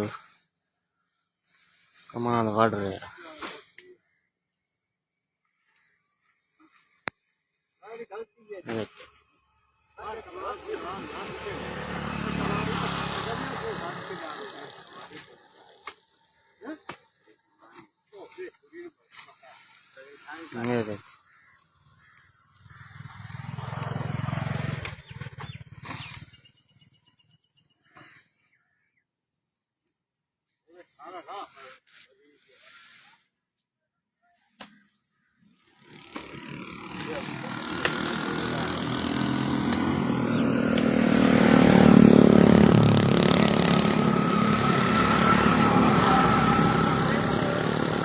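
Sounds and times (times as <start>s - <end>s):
vehicle engine passing by: 10.0s - 16.1s, 22.6s - 27.0s, 35.5s - 48.0s.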